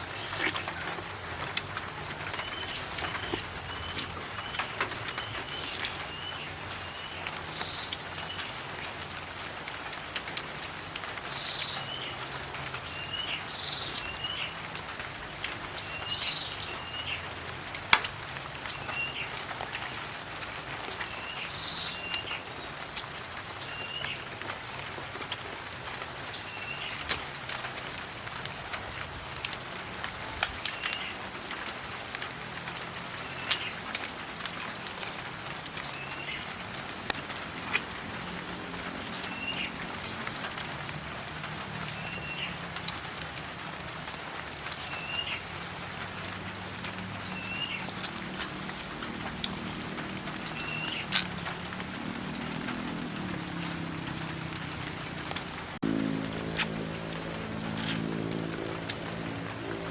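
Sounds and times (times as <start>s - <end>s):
background hiss: 0.0s - 9.9s
bird chirping: 2.2s - 8.6s, 47.2s - 48.0s, 50.4s - 51.2s.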